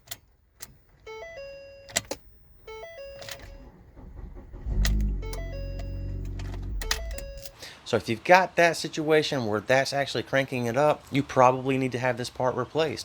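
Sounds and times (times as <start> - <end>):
car warning chime: 1.0 - 7.5
key clicking in ignition: 1.9 - 7.6
car engine starting and running: 2.0 - 7.5.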